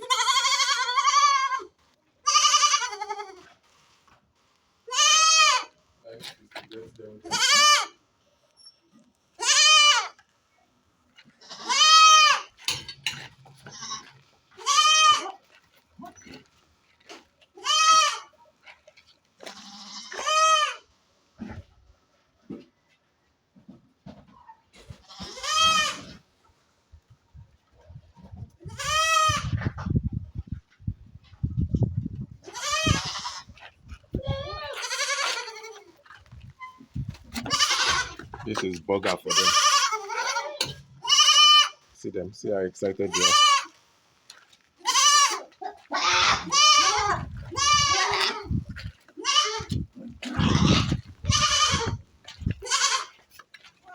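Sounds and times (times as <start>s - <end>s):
goats bleating: 0.0s - 3.5s, 4.9s - 5.8s, 7.2s - 8.0s, 9.4s - 10.2s, 11.4s - 12.5s, 13.6s - 15.6s, 17.6s - 18.3s, 19.4s - 20.8s, 25.0s - 26.2s, 28.6s - 29.6s, 32.4s - 36.1s, 37.4s - 41.8s, 43.0s - 43.7s, 44.8s - 53.3s.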